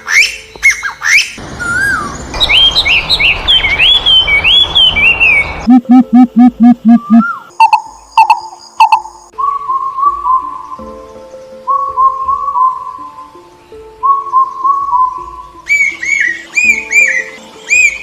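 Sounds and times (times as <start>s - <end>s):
bird calls: 0.0s - 9.2s, 14.1s - 18.0s.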